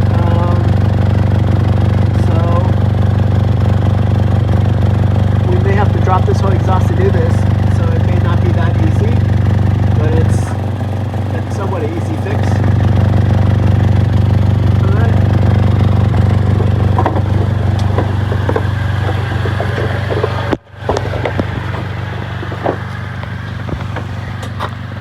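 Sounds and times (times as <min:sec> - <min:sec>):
car engine idling with exhaust leak: 0:00.0 - 0:25.0.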